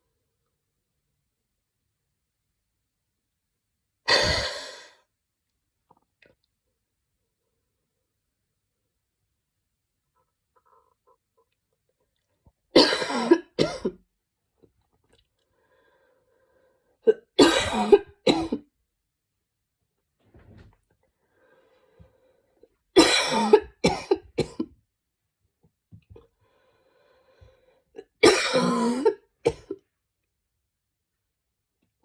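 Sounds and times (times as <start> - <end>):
woman barking cough: 4.1 - 4.6, 12.8 - 14.0, 17.4 - 18.6, 23.0 - 24.7, 28.2 - 29.8
faint breathing: 15.5 - 17.0, 21.2 - 22.6, 26.4 - 27.9.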